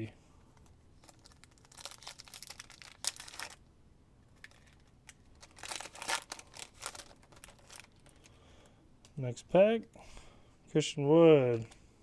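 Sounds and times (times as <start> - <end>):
foil wrapper crinkling and tearing: 1.0 - 3.6, 4.4 - 8.4.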